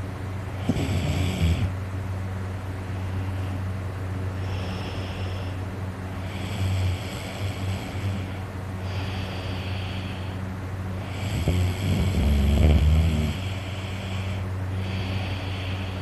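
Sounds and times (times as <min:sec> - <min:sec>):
steady low hum: 0:00.0 - 0:16.0
man snoring and breathing heavily: 0:00.5 - 0:01.8, 0:04.4 - 0:10.4, 0:11.0 - 0:16.0.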